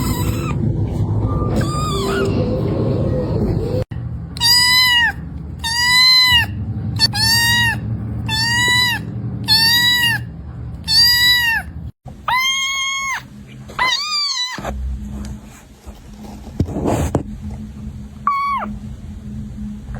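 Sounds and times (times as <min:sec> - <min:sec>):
kitten meowing: 0:00.0 - 0:00.6, 0:01.5 - 0:02.4, 0:04.4 - 0:11.7, 0:12.3 - 0:14.7, 0:18.3 - 0:18.7.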